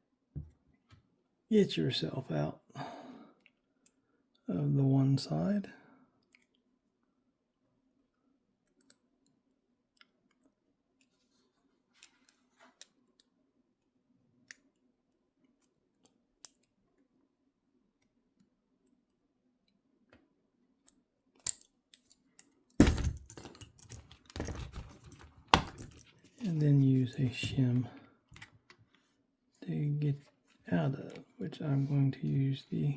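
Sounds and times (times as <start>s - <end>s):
metallic clicks of lock picking: 20.8s - 22.6s.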